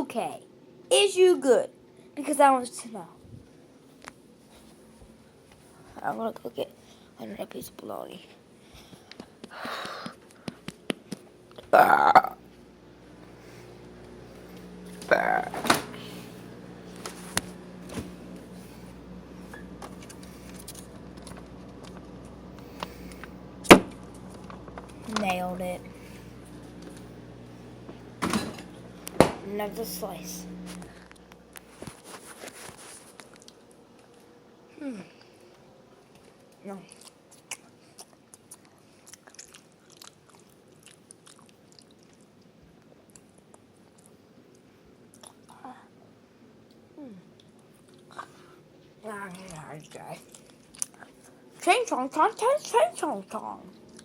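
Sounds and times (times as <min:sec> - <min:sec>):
steady low hum: 0:03.0 - 0:37.9
person chewing with smacking clicks: 0:35.2 - 0:45.5, 0:46.6 - 0:48.4, 0:49.3 - 0:51.4, 0:53.7 - 0:54.0.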